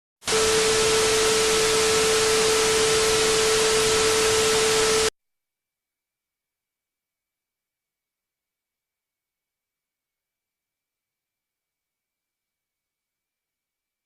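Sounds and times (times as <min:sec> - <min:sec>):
static hiss: 0:00.2 - 0:05.1
steady hum-like tone: 0:00.3 - 0:05.1.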